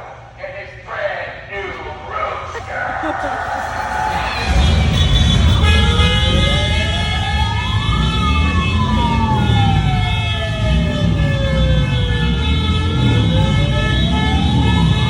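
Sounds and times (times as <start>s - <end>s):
steady low rumble: 0.0s - 11.7s
steady high tones: 2.6s - 7.3s
siren winding up and down: 3.0s - 15.0s.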